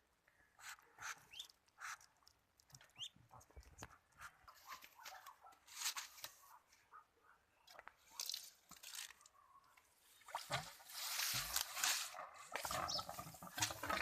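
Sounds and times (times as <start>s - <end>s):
ducklings pecking wet food: 0.6s - 4.3s.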